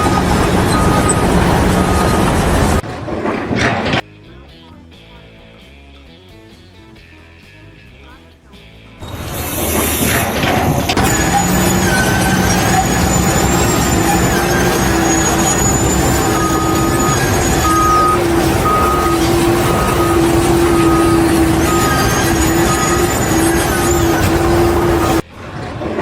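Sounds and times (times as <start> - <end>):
repeating short beep: 0.0 - 2.8, 10.9 - 25.2
heavy machine engine running: 0.0 - 4.0, 9.0 - 26.0.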